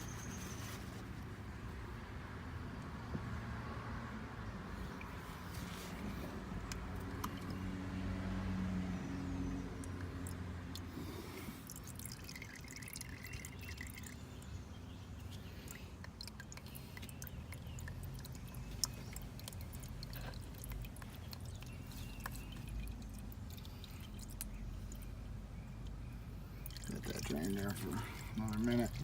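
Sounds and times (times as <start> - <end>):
oil trickling and dripping: 0.0 - 2.0, 4.4 - 29.0
low steady hum: 4.1 - 29.0
small ticks: 15.2 - 25.2.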